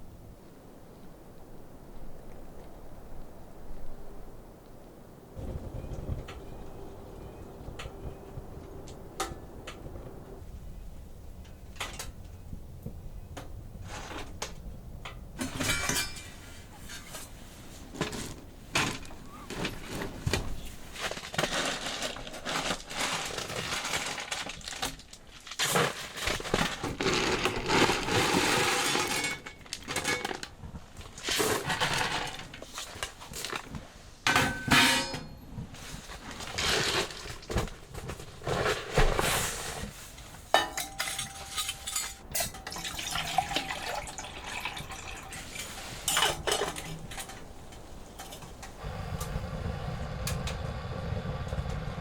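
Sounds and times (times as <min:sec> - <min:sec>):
rustling and scraping: 0:13.8 - 0:14.7, 0:15.4 - 0:42.6, 0:45.2 - 0:48.9
hard objects clinking and clattering: 0:40.5 - 0:48.8.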